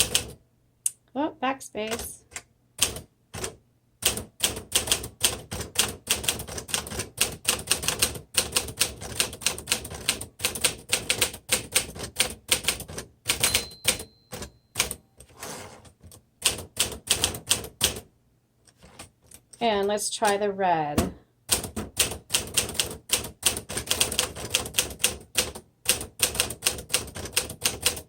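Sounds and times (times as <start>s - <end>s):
typewriter bell ringing: 13.4s - 15.0s.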